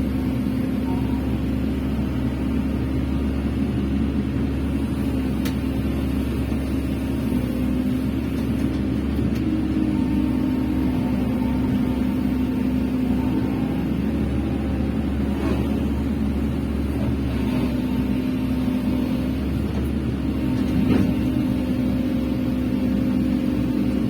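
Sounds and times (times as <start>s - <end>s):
excavator diesel engine running: 0.0s - 24.0s.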